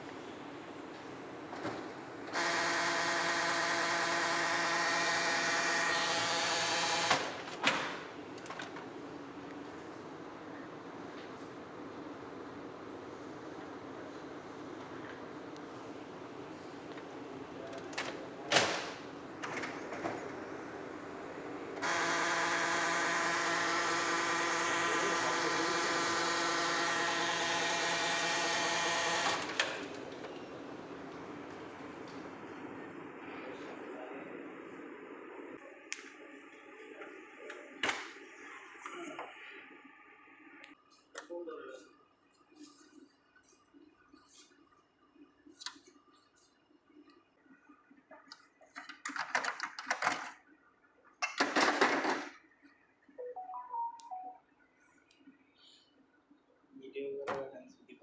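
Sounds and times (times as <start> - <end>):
photocopier humming whine: 0.0 - 48.0
photocopier motors whining: 2.3 - 7.5, 21.4 - 31.8.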